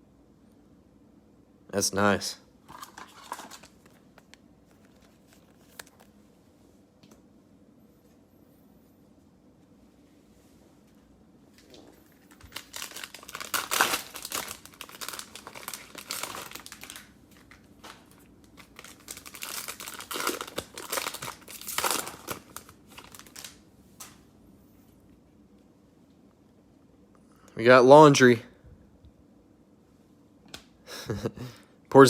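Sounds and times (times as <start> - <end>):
cellophane wrapper crinkling and tearing: 2.7 - 6.1, 12.1 - 23.6.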